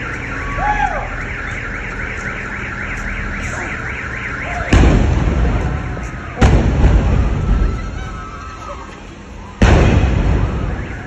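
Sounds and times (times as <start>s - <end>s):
warbling electronic alarm: 0.0s - 11.0s
loud explosion: 4.7s - 8.0s, 9.6s - 11.0s.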